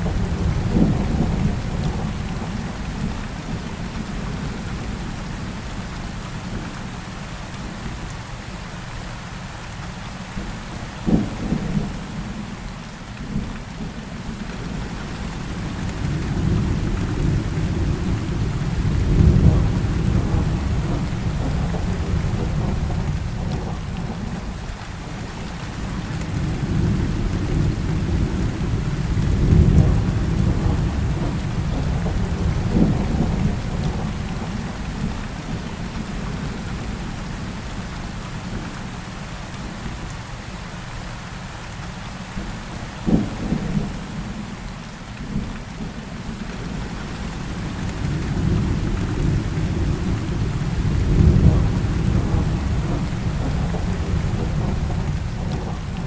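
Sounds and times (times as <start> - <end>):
thunder rumbling: 0.0 - 4.4, 14.7 - 37.6, 45.3 - 56.0
heavy rain falling: 0.0 - 56.0.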